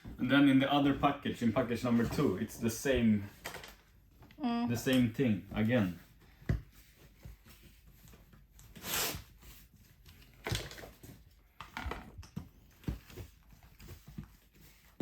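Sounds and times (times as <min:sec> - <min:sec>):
furniture parts clicking and knocking: 0:10.3 - 0:14.9.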